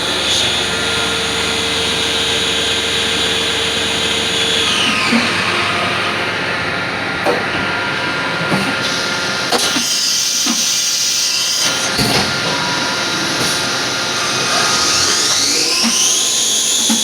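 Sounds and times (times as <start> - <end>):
machine motor hum: 11.7 - 17.0
spindle whine rising in pitch: 14.2 - 17.0.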